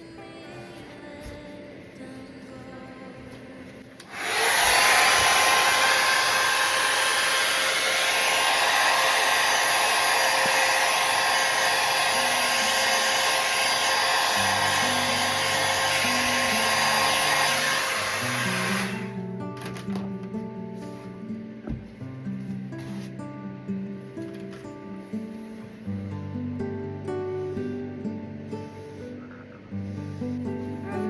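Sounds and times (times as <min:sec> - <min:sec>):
hairdryer blowing: 0:04.0 - 0:19.2
hairdryer motor whine: 0:04.0 - 0:19.2.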